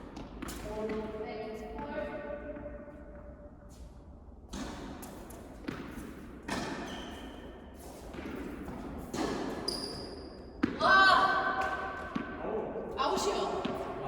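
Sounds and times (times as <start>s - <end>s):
tennis ball bouncing on court: 0.1s - 3.2s, 4.5s - 7.3s, 8.1s - 10.9s, 11.5s - 12.4s, 13.5s - 14.0s
tennis ball hit by rackets: 4.5s - 7.0s.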